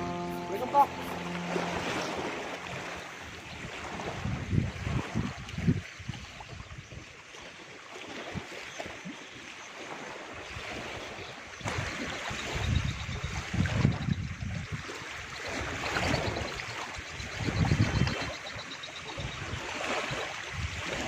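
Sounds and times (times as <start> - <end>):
sea waves: 0.0 - 21.0
wind gusting on microphone: 3.3 - 7.0, 15.6 - 18.4.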